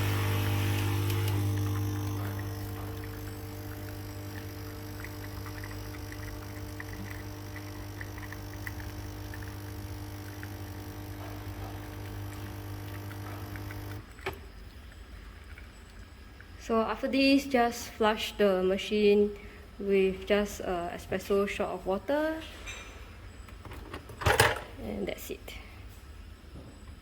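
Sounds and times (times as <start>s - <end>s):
coffee machine pump humming: 0.0s - 17.7s.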